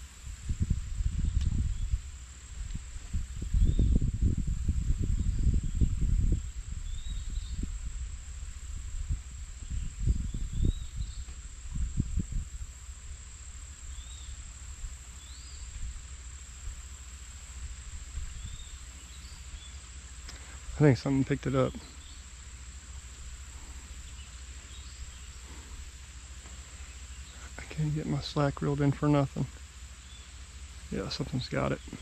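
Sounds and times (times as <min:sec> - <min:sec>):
low rumbling noise: 0:00.0 - 0:32.0
high-pitched insect drone: 0:01.1 - 0:32.0.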